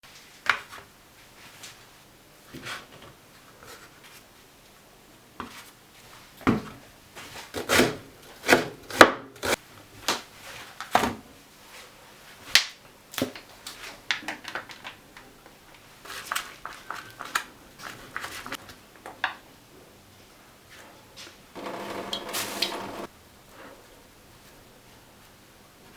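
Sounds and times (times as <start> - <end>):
stirring with clicking and scraping: 21.6 - 23.1.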